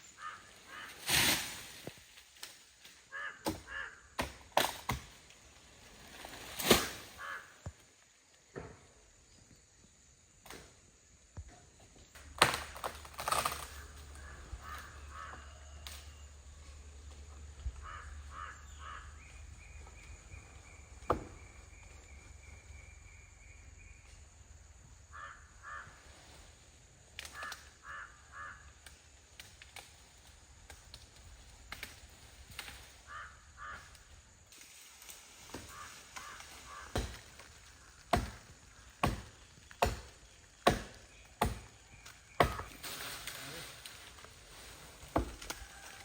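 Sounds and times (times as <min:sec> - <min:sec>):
crows cawing: 0:00.1 - 0:01.0, 0:03.1 - 0:04.2, 0:07.2 - 0:07.7, 0:13.8 - 0:15.9, 0:17.6 - 0:19.4, 0:25.1 - 0:26.0, 0:27.3 - 0:28.8, 0:33.0 - 0:34.1, 0:35.6 - 0:38.0.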